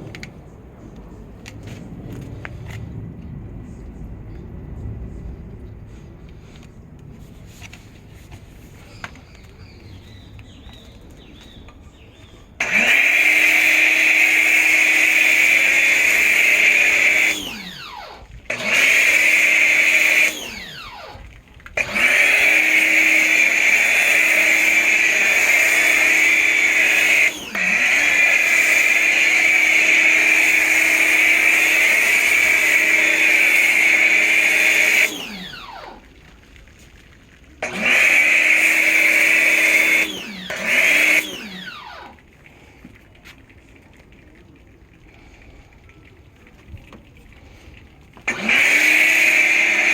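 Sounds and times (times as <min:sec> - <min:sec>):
pressure washer motor whining: 0:12.6 - 0:36.2, 0:37.6 - 0:42.2, 0:48.2 - 0:49.9.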